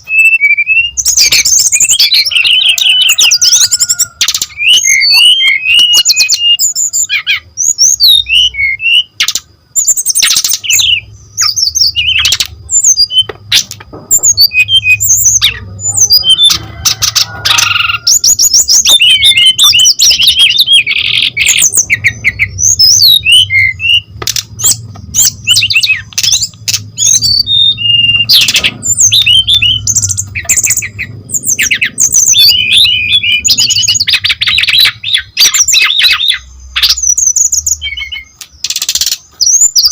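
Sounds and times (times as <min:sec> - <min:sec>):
bird singing chirps and trills: 0:00.0 - 0:39.9
sharp bird clicks: 0:09.2 - 0:14.7, 0:24.1 - 0:30.9, 0:34.1 - 0:39.9.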